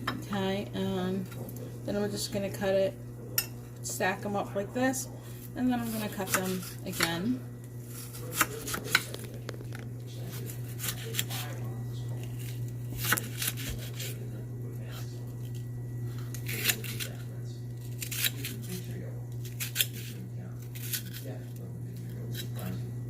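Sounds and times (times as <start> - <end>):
steady low hum: 0.0 - 23.0
knife chopping on cutting board: 5.8 - 7.2, 7.9 - 9.2.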